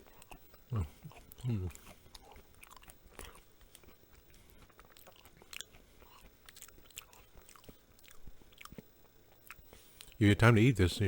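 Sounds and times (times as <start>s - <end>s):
person chewing crunchy food: 0.0s - 10.2s.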